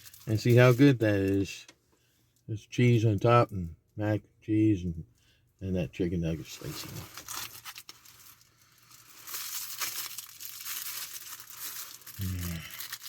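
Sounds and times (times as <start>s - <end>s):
food packaging crinkling: 0.0s - 1.3s, 6.4s - 13.0s.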